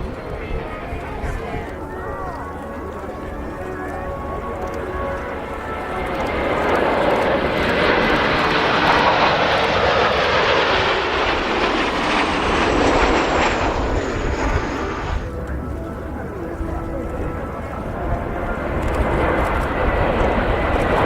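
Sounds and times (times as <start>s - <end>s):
jet engine roar with turbine whine: 0.0s - 21.0s.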